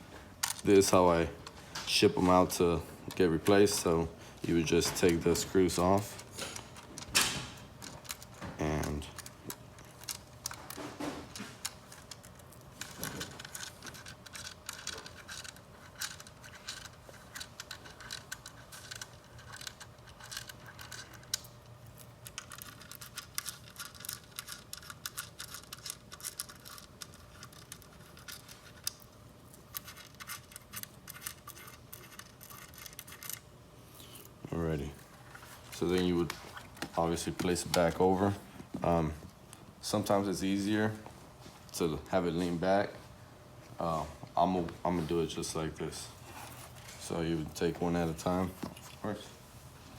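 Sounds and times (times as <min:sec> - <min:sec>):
small metallic clicks and rattles: 0:06.1 - 0:33.4.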